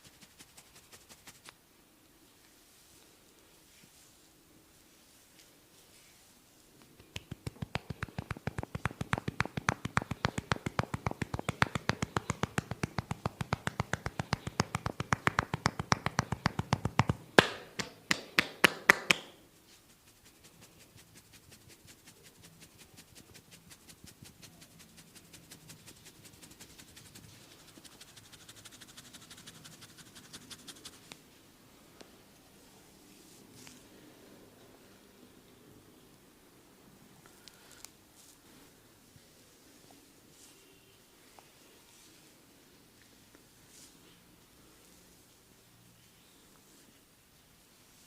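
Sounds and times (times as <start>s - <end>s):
hands tapping on head: 6.8s - 19.4s
sharp slaps: 6.8s - 19.4s.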